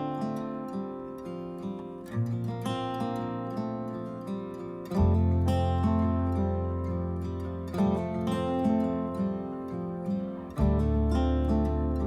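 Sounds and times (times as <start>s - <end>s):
acoustic guitar plucking: 0.0s - 12.0s
deep bass note: 10.6s - 12.0s.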